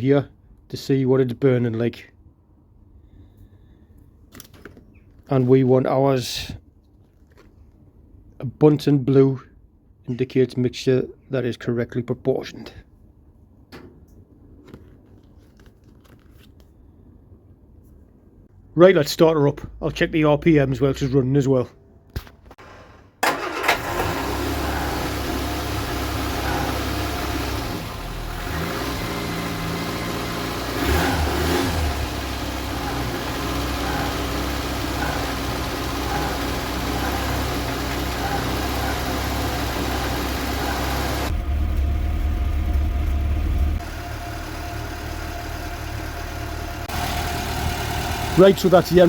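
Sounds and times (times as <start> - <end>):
car engine starting and running: 22.6 - 49.0.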